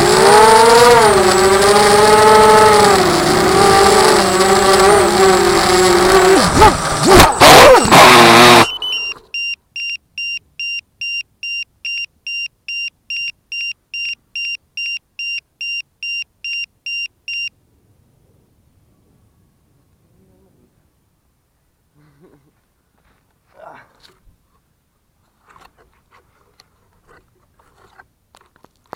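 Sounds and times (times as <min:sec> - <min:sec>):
drone propellers whining: 0:00.0 - 0:09.3
short high electronic beeps: 0:07.7 - 0:17.5.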